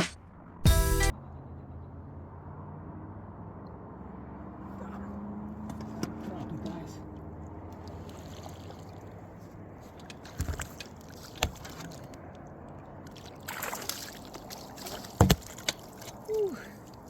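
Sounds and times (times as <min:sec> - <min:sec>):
splashing rustle: 0:06.2 - 0:17.0
knocks and thumps in a boat: 0:09.8 - 0:12.3, 0:13.1 - 0:16.2.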